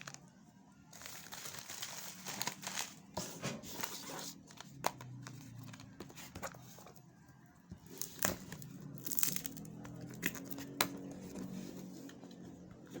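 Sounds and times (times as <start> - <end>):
packaging tearing and crinkling: 1.0 - 3.0, 7.9 - 10.6.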